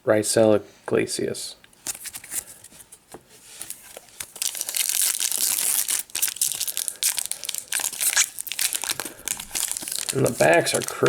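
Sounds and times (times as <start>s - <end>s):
wrapper crinkling and tearing: 3.6s - 11.0s.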